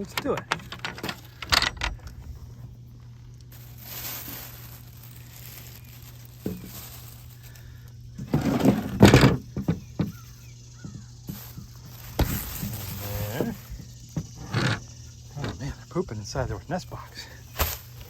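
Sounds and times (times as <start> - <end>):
plastic bag crinkling: 0.0 - 8.3, 11.3 - 13.8
steady low hum: 0.0 - 18.0
knocks and scrapes: 8.2 - 15.8.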